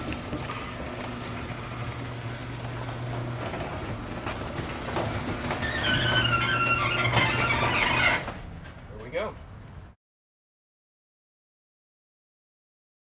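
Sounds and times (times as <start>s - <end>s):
garage door opener humming: 0.0s - 8.6s
door rattling along tracks: 0.0s - 9.5s
garage door squealing: 0.6s - 8.5s.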